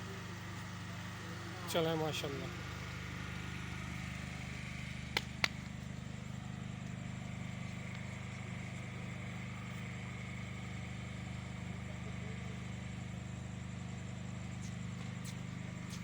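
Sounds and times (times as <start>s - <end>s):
engine idling: 0.0s - 16.0s
sharp clicks: 5.1s - 5.7s.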